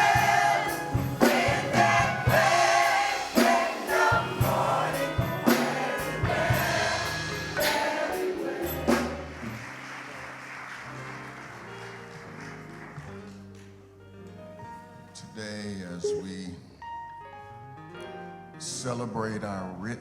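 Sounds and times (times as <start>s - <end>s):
drum hit: 0.0s - 8.0s
choir and band singing: 0.0s - 9.6s
keyboard chords: 0.0s - 10.4s, 11.0s - 20.0s.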